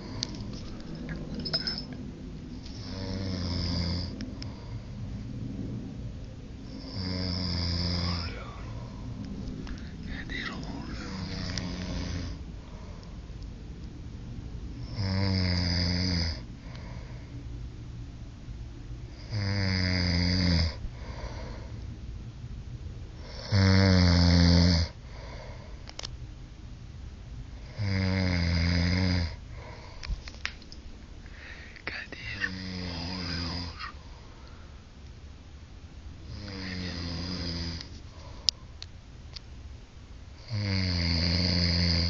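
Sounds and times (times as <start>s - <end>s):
man snoring: 2.7s - 4.1s, 6.8s - 8.9s, 10.0s - 12.4s, 14.8s - 16.4s, 19.2s - 21.6s, 23.2s - 25.4s, 27.6s - 29.8s, 31.9s - 34.0s, 36.2s - 37.9s, 40.4s - 42.0s.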